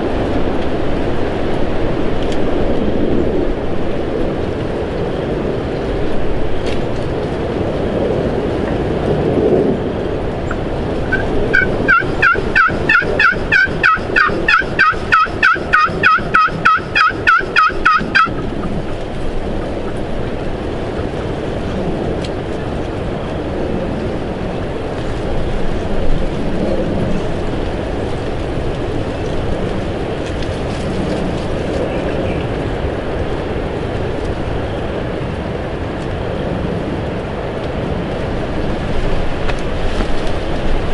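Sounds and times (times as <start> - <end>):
turkey yelping: 10.5 - 19.0.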